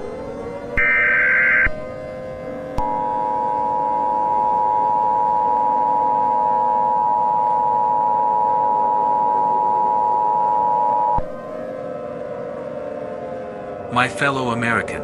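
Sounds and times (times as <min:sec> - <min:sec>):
two-tone alert signal: 0:00.8 - 0:01.7.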